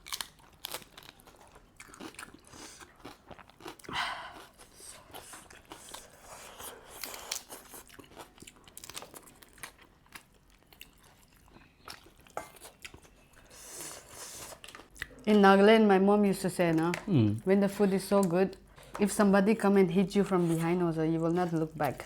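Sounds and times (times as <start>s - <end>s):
chewing and crunching: 0.0s - 15.2s.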